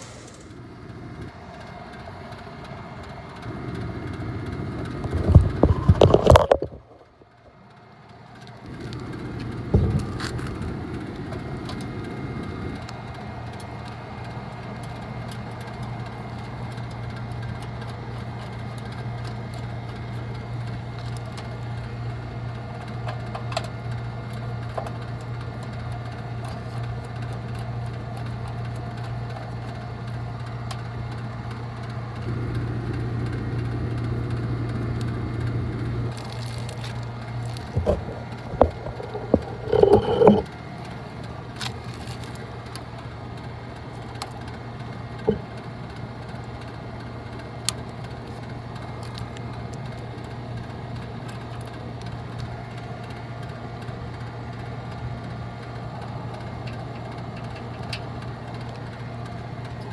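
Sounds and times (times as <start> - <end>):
hvac equipment humming: 0.0 - 59.9
handling knocks and rustling: 36.1 - 40.5.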